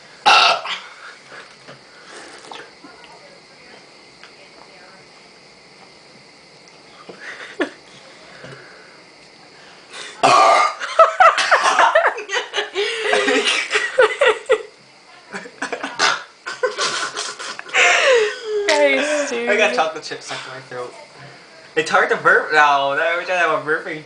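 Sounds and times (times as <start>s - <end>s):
girl burping loudly: 0.2s - 0.8s, 10.2s - 10.8s
laughter: 7.2s - 7.8s, 10.8s - 14.7s, 15.3s - 18.5s.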